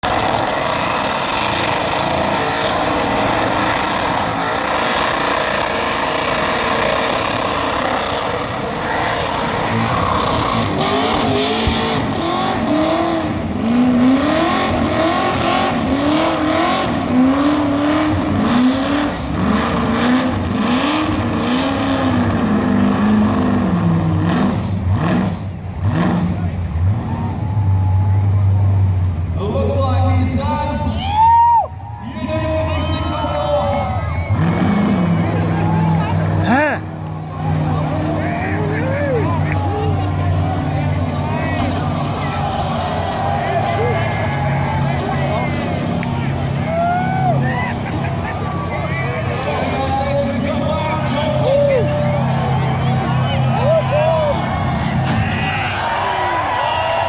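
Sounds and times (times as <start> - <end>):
car engine revving with spinning tyres: 0.0 - 29.4, 32.1 - 57.0.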